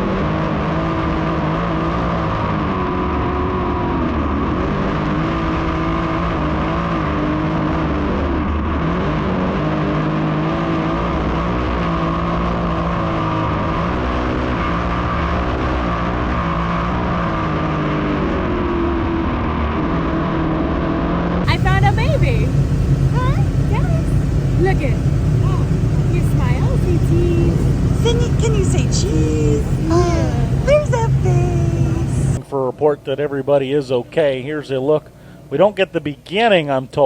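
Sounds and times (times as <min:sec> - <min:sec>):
constant engine rumble: 0:21.5 - 0:32.4
race car engines revving: 0:21.5 - 0:32.4.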